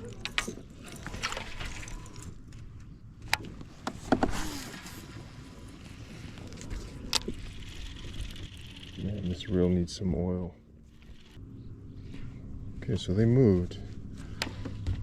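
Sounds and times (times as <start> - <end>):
fishing reel cranking: 7.1 - 9.5.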